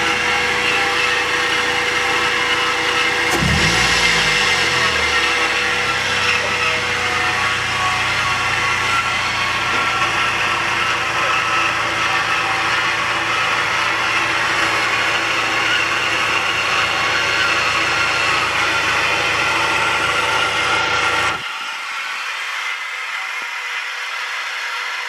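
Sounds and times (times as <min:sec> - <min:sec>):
low engine hum: 0:00.0 - 0:21.4
loud mechanical engine noise: 0:00.0 - 0:25.0.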